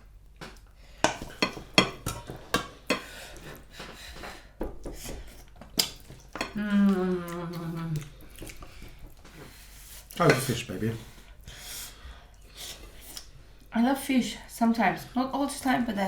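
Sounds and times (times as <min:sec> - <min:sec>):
cutlery clinking on plates: 0:01.1 - 0:03.1, 0:10.2 - 0:10.6.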